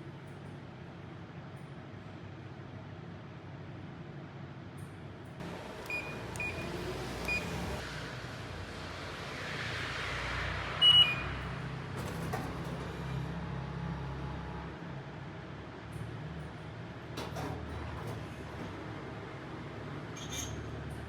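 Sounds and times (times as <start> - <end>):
vending machine beeps: 5.4 - 7.8, 10.8 - 11.4.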